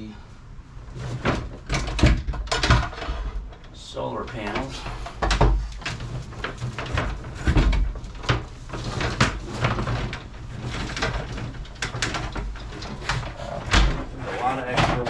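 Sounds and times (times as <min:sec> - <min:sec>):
knocks and thuds of handling gear: 0:04.3 - 0:15.0.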